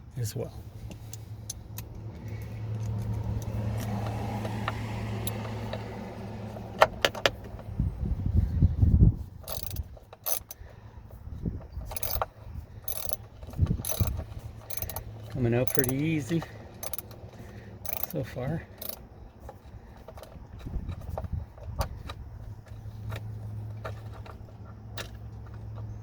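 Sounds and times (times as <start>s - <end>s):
ratchet wrench clicking: 0.9s - 5.9s, 9.4s - 10.7s, 11.4s - 19.1s.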